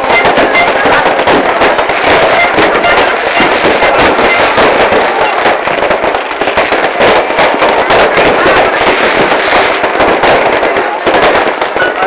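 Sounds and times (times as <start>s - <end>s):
fireworks crackling bursts: 0.0s - 12.0s.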